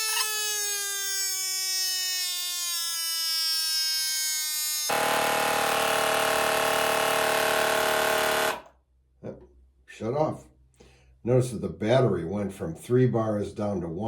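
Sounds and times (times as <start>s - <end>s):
tyre inflator humming: 4.9s - 8.7s.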